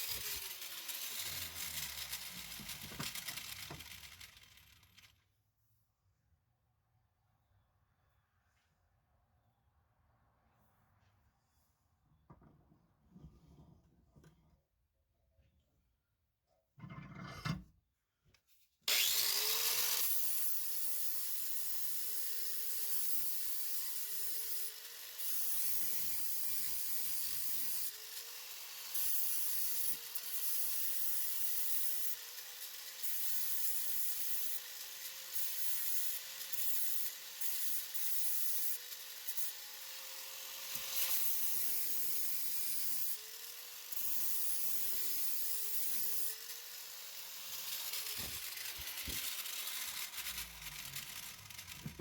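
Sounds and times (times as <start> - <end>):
grinder motor whine: 0.0 - 5.1, 18.9 - 21.5, 46.4 - 52.0
grinding wheel hissing on metal: 0.0 - 5.1, 18.9 - 52.0.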